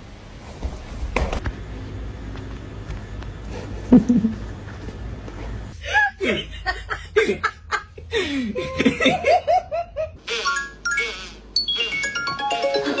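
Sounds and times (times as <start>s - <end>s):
person laughing: 3.8s - 4.5s, 5.8s - 10.2s
chiming musical jingle: 10.5s - 13.0s.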